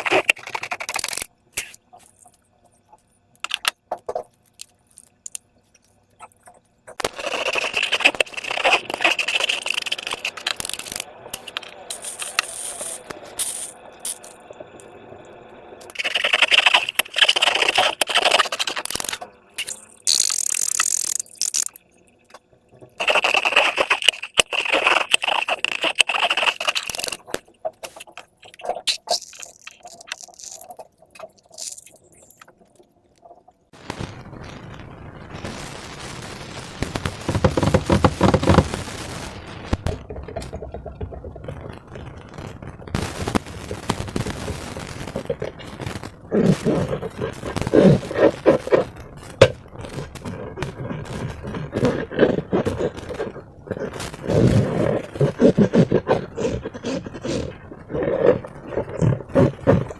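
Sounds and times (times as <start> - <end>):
slime crackling and popping: 0.0 - 1.7, 6.4 - 14.4, 15.8 - 21.9, 23.0 - 32.6, 36.4 - 59.9
slime squishing: 6.2 - 14.4, 15.9 - 21.9, 23.0 - 33.4, 45.0 - 59.9.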